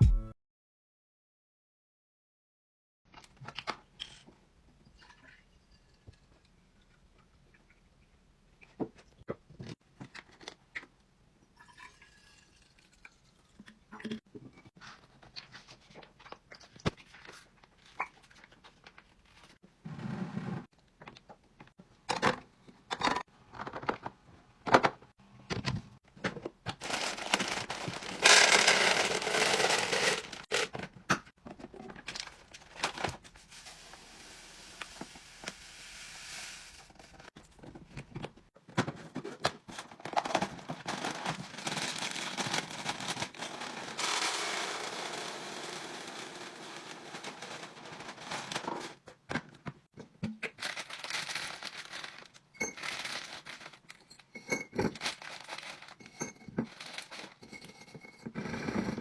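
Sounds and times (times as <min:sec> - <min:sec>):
plastic packaging crinkling: 0:26.8 - 0:30.7, 0:40.1 - 0:44.2, 0:50.5 - 0:54.0, 0:55.0 - 0:56.1, 0:56.7 - 0:57.4.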